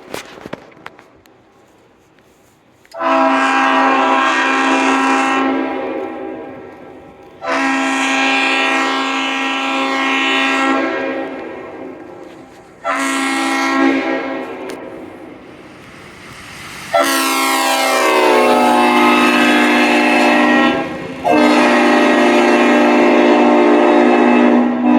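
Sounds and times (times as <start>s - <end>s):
locomotive air horn blasts: 2.9s - 6.7s, 7.4s - 15.4s, 16.9s - 24.9s.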